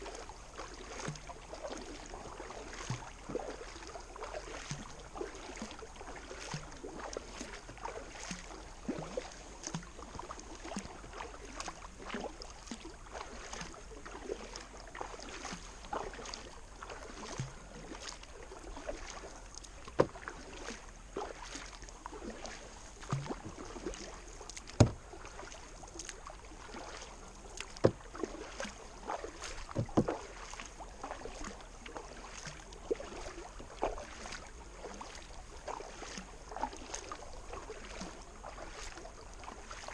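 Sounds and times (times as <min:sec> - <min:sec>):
paddle splashing in water: 0:00.0 - 0:39.9
sharp knocks: 0:24.8 - 0:25.0.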